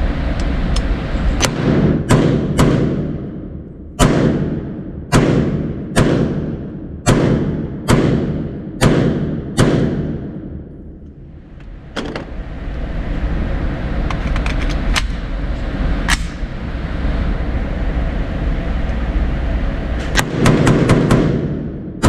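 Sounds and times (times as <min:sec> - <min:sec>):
rifle gunshots with echo: 0:01.4 - 0:10.7, 0:20.2 - 0:22.0.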